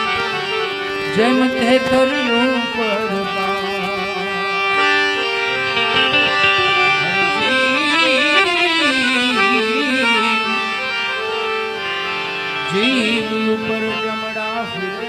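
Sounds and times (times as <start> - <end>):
harmonium held notes: 0.0 - 15.0
wavering gliding melody: 0.5 - 11.7.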